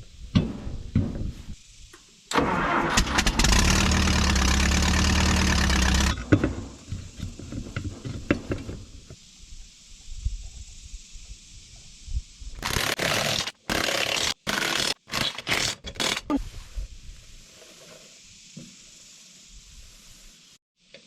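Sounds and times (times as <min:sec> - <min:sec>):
power tool running: 0:03.2 - 0:06.2, 0:12.6 - 0:16.3.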